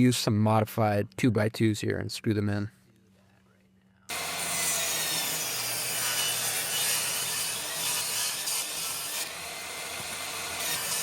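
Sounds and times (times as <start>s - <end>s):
power tool cutting wood: 4.1s - 11.0s.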